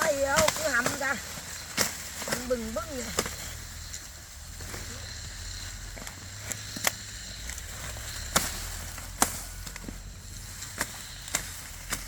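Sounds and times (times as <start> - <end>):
corn stalks snapping: 0.0 - 4.9, 5.9 - 12.0.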